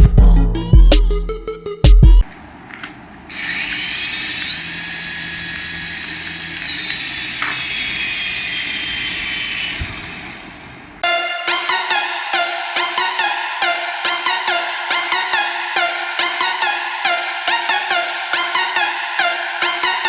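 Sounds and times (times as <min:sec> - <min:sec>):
small electric motor whining: 0:03.3 - 0:11.0.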